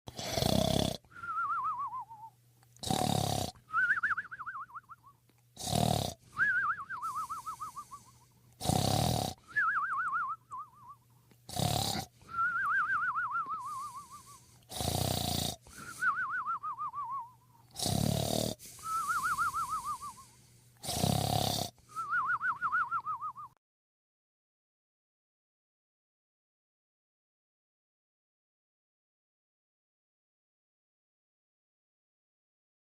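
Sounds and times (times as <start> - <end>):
comic snore: 0.1 - 1.1, 2.8 - 3.6, 5.6 - 6.2, 7.0 - 9.4, 11.5 - 12.2, 13.6 - 16.1, 17.7 - 21.8
wavering falling whistle: 6.4 - 7.9, 18.8 - 20.2.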